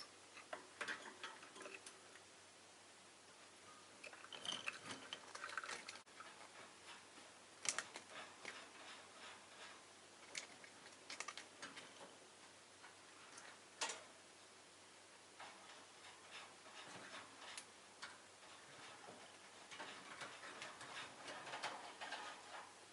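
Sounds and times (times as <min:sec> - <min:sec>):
bird pecking clicks and taps: 0:07.6 - 0:08.6.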